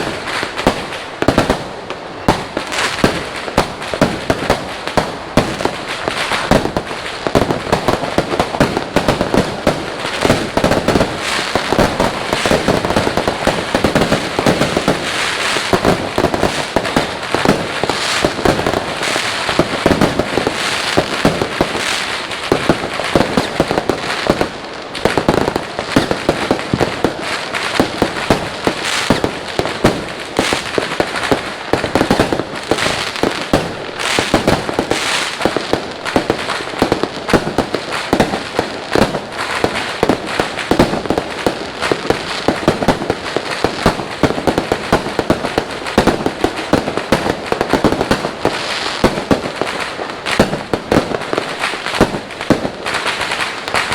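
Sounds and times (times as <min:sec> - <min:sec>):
fireworks cracking and banging: 0:00.0 - 0:53.9.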